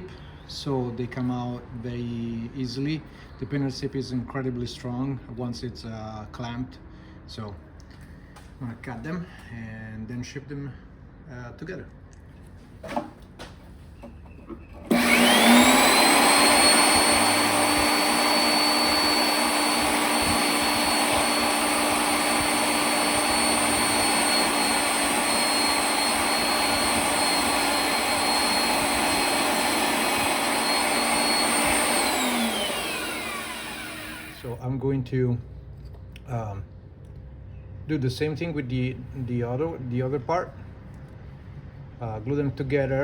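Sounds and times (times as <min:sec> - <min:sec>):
workshop machine motor whine: 0:14.8 - 0:34.5.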